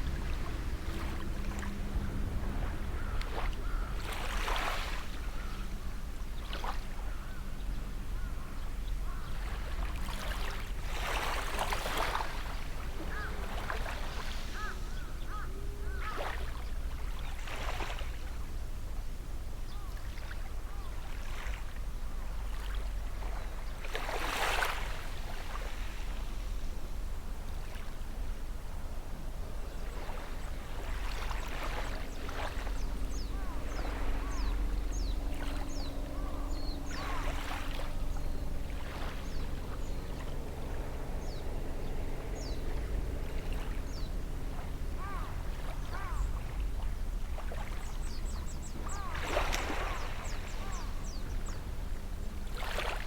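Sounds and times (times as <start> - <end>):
distant boat engine hum: 0.0 - 53.0
small waves breaking on shore: 0.0 - 53.0.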